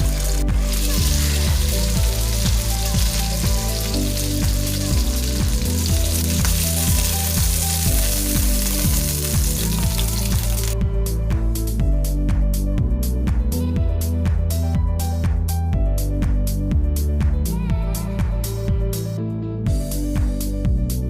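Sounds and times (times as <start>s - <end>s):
food sizzling in a pan: 0.0s - 10.8s
background music: 0.0s - 21.0s.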